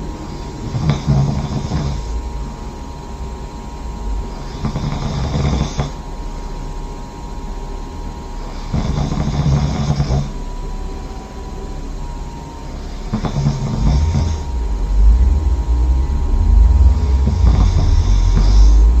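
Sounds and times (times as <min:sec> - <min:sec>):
person snoring loudly: 0:00.3 - 0:02.2, 0:04.3 - 0:06.0, 0:08.4 - 0:10.4, 0:12.7 - 0:19.0.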